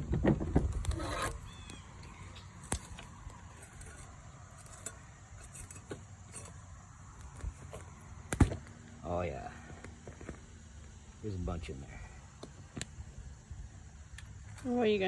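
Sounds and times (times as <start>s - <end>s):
rustling soil: 0.0s - 8.3s.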